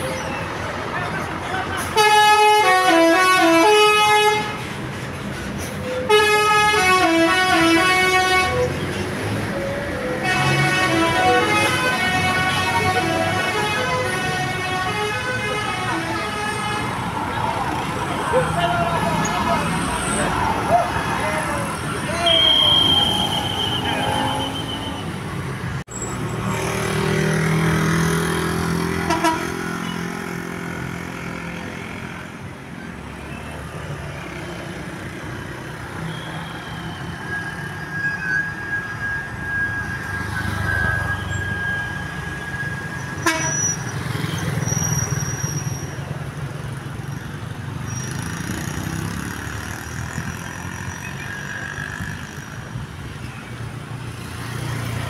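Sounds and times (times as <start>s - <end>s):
bus engine hum: 0.0s - 22.6s
multi-tone bus horn: 1.8s - 4.7s, 5.8s - 9.0s, 9.9s - 17.2s, 22.3s - 25.1s, 28.6s - 30.2s, 39.6s - 44.0s.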